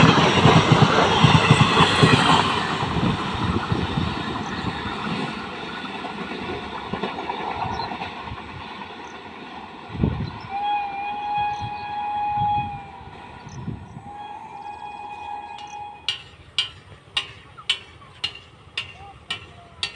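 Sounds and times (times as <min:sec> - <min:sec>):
train rumbling and clattering: 0:00.0 - 0:10.5, 0:12.3 - 0:19.9
train horn blast: 0:10.4 - 0:16.1.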